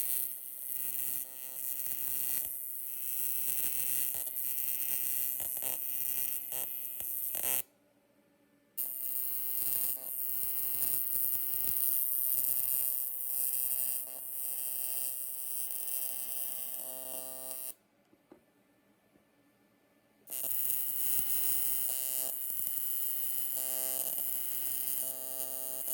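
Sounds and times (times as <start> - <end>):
welding arc buzzing: 0.0 - 7.6, 8.8 - 17.8, 20.3 - 25.9.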